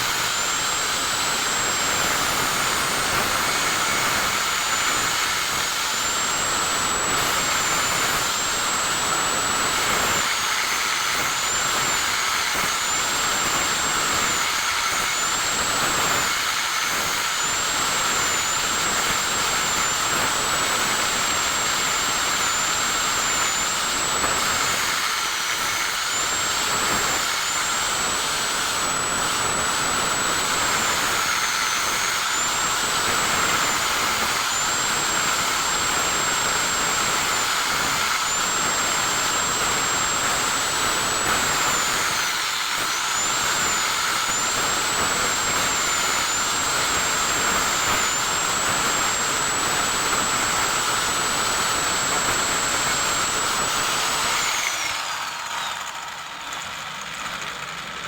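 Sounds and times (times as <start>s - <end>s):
high motor whine: 0.0s - 58.0s
small blower hissing: 0.0s - 58.0s.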